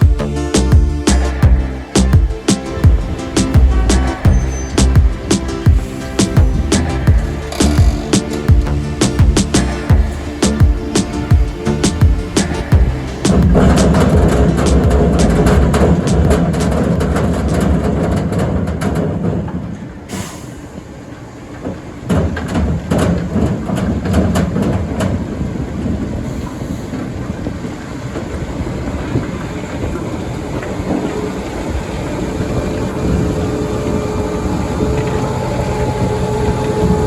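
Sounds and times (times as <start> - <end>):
steady machine whine: 0.0 - 16.6, 27.6 - 37.0
beet loader engine rumble: 0.0 - 19.6, 20.6 - 37.0
sharp knocks: 4.3 - 19.1.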